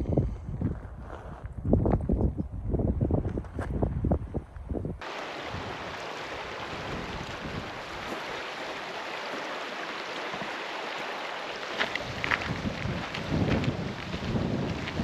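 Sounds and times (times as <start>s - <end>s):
river water rushing over rocks: 5.0s - 15.0s.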